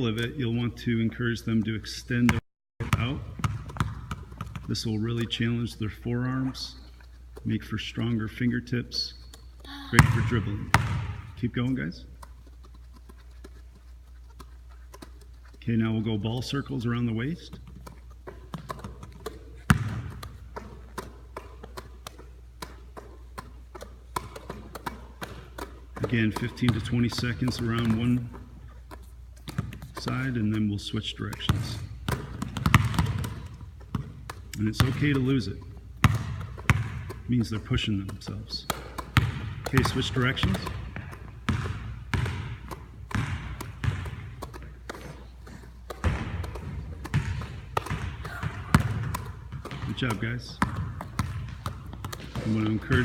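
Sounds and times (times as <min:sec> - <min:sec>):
basketball thud: 0:02.8 - 0:04.7, 0:10.0 - 0:11.4, 0:18.5 - 0:21.9, 0:31.3 - 0:35.4, 0:36.0 - 0:45.0, 0:45.9 - 0:53.0
palm slaps on basketballs: 0:10.0 - 0:11.3, 0:17.5 - 0:53.0.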